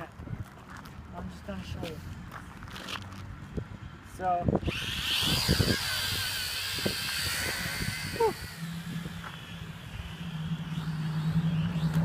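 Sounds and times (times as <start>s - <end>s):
drone propellers whining: 4.6s - 12.0s
steady low hum: 4.7s - 12.0s.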